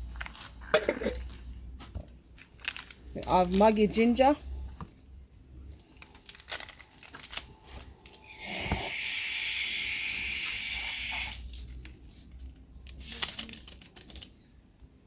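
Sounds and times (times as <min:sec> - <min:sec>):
dry seasoning pouring hiss: 0:08.3 - 0:11.7.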